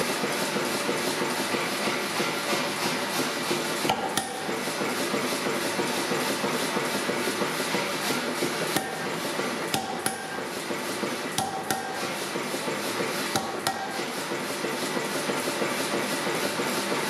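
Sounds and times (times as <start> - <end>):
hammer blows on steel: 11.3 - 12.5.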